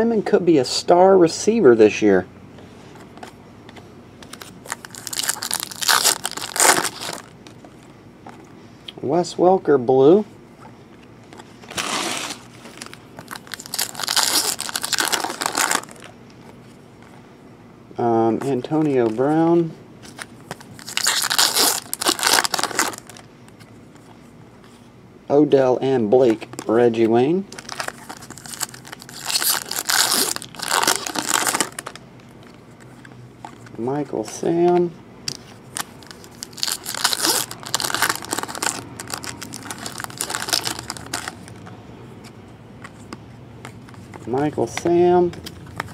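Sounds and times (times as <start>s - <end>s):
foil wrapper crinkling and tearing: 4.3s - 7.4s, 11.7s - 16.1s, 20.1s - 23.3s, 27.5s - 32.0s, 35.7s - 41.6s.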